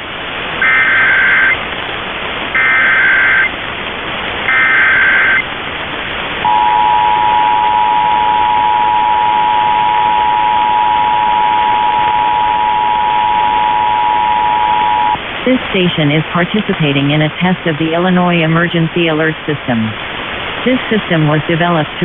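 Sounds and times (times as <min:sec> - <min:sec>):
radio static hiss: 0:00.0 - 0:22.0
warbling data bursts: 0:00.6 - 0:01.6, 0:02.6 - 0:03.5, 0:04.5 - 0:05.4, 0:06.5 - 0:15.2
two-tone alert signal: 0:06.5 - 0:15.2.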